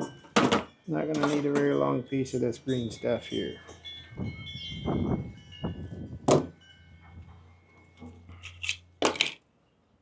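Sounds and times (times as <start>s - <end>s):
knocks and clatters of parts: 0.0s - 1.7s, 6.2s - 9.4s.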